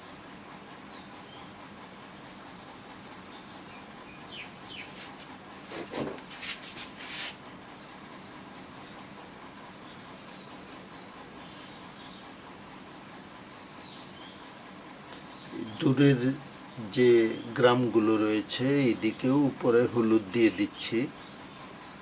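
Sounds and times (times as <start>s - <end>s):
cricket trilling: 0.0s - 22.0s
birds chirping: 0.8s - 5.9s, 7.0s - 22.0s
scratchy rustle: 4.9s - 7.4s.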